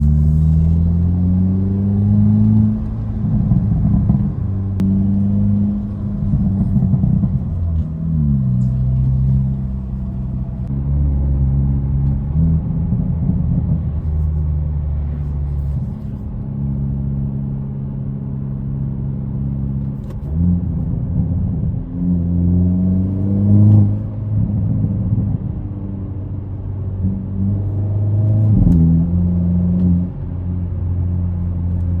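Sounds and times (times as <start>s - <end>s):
car engine revving: 0.0s - 32.0s
exhaust pops and crackles: 5.7s - 10.1s.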